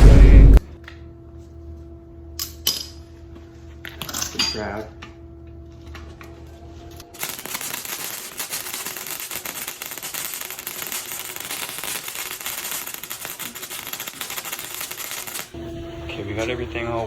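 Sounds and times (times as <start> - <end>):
welding arc crackling: 7.0 - 15.6.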